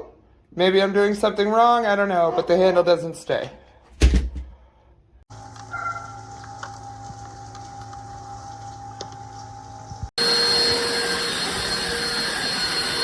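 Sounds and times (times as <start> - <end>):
vacuum cleaner motor running: 5.3 - 13.0
thin high whine: 5.4 - 13.0.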